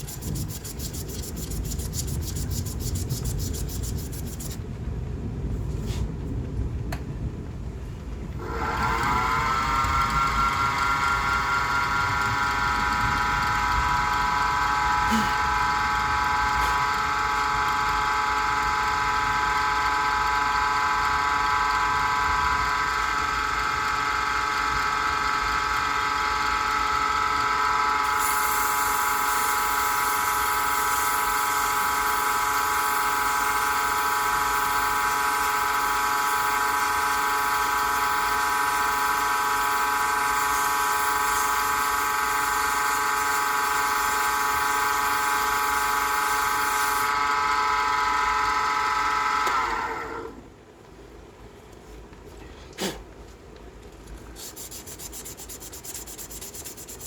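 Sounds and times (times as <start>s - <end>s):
high hiss of wood being worked: 0.0s - 4.6s, 28.1s - 32.2s, 54.4s - 57.0s
wood lathe whining: 8.4s - 50.4s.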